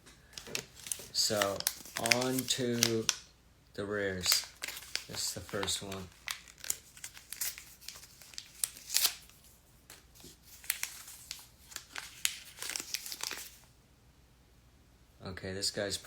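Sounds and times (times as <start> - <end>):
plastic packaging crinkling and tearing: 0.3 - 3.2, 4.1 - 13.7.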